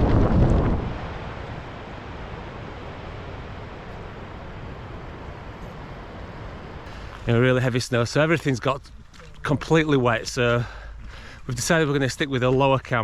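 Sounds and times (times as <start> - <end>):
wind on microphone: 0.0 - 6.8.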